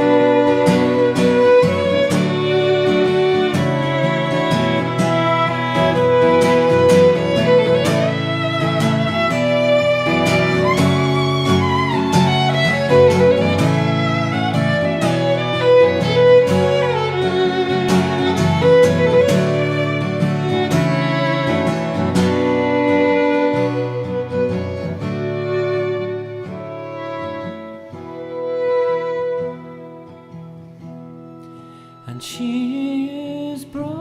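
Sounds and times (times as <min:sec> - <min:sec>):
fiddle melody: 0:00.0 - 0:34.0
strummed guitar: 0:00.0 - 0:34.0.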